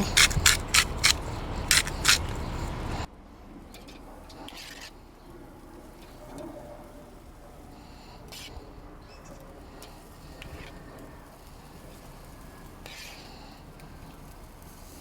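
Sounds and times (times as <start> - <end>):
salt grinder turning: 0.0 - 2.7.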